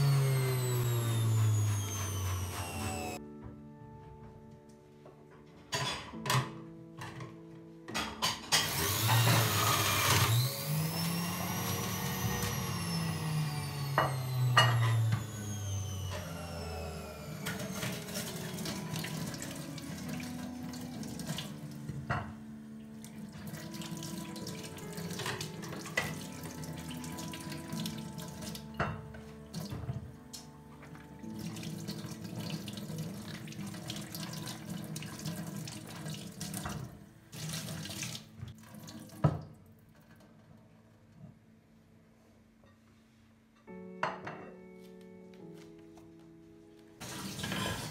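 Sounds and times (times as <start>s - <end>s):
dishes clinking: 5.6s - 7.2s.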